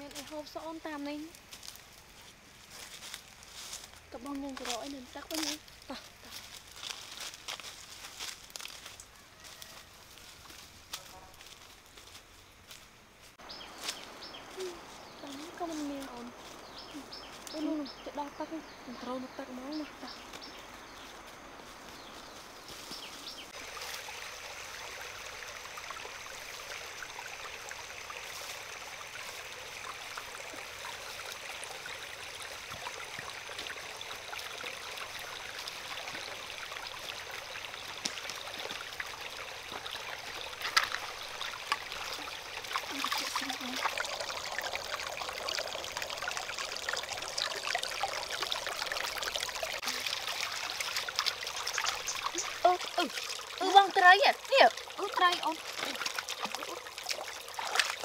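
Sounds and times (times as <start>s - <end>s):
water running and trickling: 0.0s - 58.0s
small sharp clicks or splashes: 36.8s - 53.6s, 54.7s - 58.0s.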